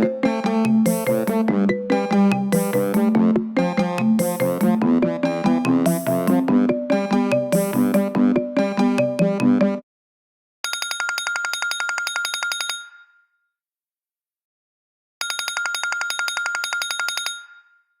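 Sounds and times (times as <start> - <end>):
telephone bell ringtone: 10.6 - 13.3, 15.2 - 18.0.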